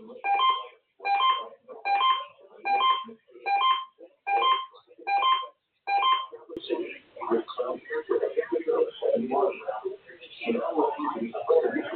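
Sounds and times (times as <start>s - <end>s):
electronic alert beeps: 0.2s - 6.4s.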